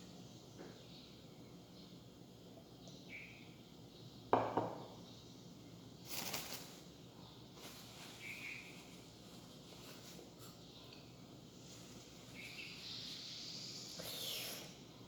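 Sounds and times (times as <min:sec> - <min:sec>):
hissy rustle: 0:06.0 - 0:06.9, 0:07.5 - 0:10.4.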